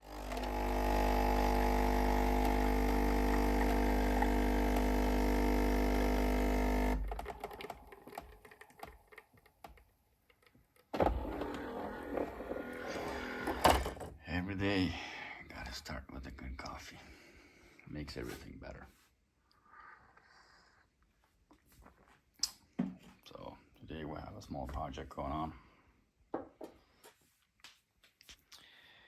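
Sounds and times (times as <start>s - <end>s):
coffee machine motor running: 0.0s - 8.3s, 11.0s - 14.0s.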